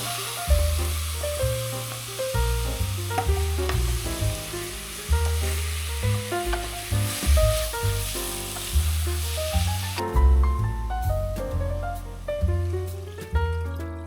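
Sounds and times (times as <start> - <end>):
food sizzling in a frying pan: 0.0 - 10.0, 11.3 - 13.4
background music: 0.0 - 14.0.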